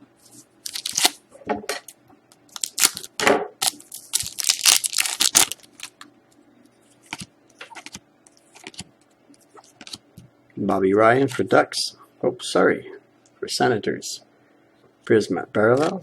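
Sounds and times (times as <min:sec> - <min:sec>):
plastic and foil packaging crinkling: 0:00.6 - 0:01.2, 0:02.5 - 0:06.0.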